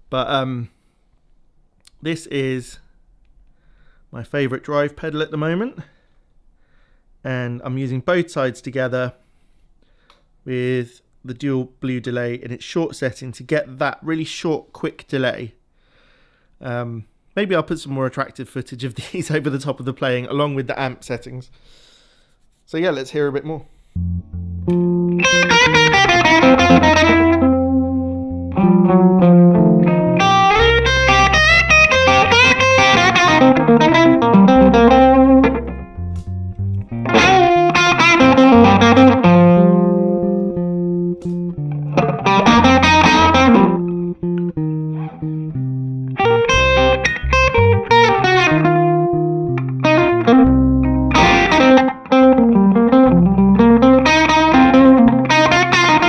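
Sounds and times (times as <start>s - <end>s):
overdriven electric guitar blues: 24.2s - 56.0s.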